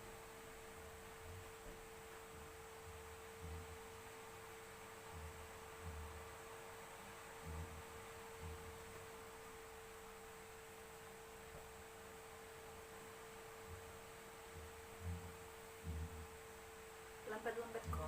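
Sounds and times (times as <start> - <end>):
faint steady hum: 0.0 - 18.0
dull low thumps: 7.3 - 9.1, 13.6 - 16.6.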